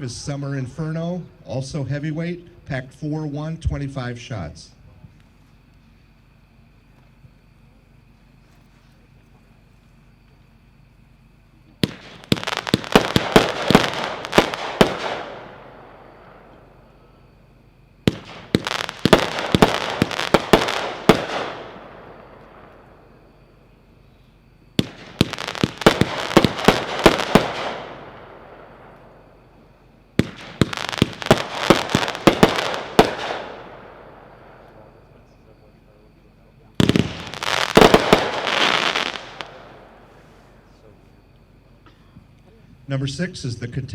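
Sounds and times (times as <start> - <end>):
firework crackle: 11.8 - 16.8, 18.0 - 23.1, 24.7 - 29.1, 30.2 - 34.9, 36.8 - 40.6.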